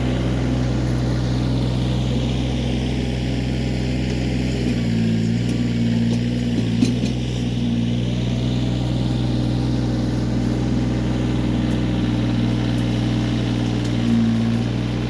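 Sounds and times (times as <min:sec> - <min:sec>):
tractor diesel engine running: 0:00.0 - 0:15.0.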